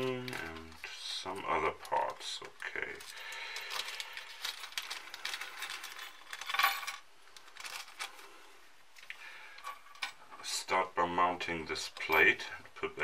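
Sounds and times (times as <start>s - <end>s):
metal parts clattering: 3.0s - 8.2s
small metal parts clinking: 3.0s - 8.2s.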